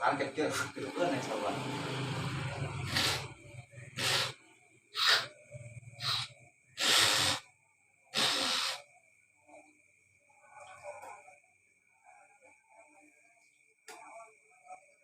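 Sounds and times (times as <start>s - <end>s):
sharp hissing breath bursts: 2.8s - 5.4s, 6.0s - 7.5s, 8.1s - 8.9s.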